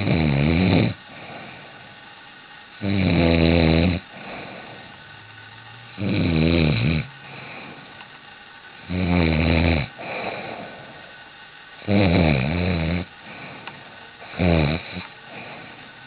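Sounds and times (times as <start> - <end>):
person snoring loudly: 0.0 - 1.6, 2.8 - 4.9, 6.0 - 7.7, 8.8 - 10.9, 11.8 - 13.1, 14.2 - 15.8
soft breathing: 1.0 - 2.7, 4.0 - 5.2, 7.0 - 8.9, 9.9 - 11.8, 13.0 - 16.0.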